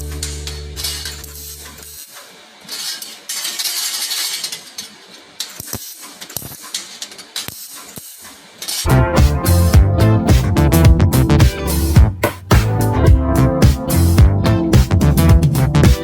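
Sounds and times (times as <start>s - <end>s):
hard objects clinking and clattering: 0.0s - 8.9s
hissing noise: 7.5s - 14.2s.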